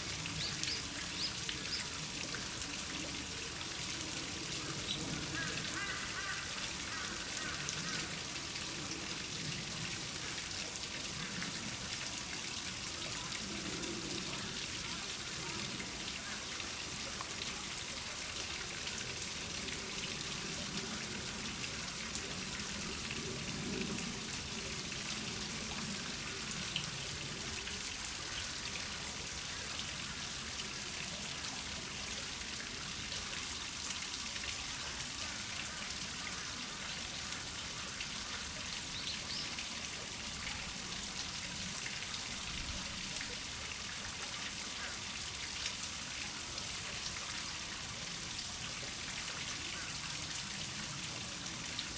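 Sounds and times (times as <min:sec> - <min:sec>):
rain-like hiss: 0:00.0 - 0:51.9.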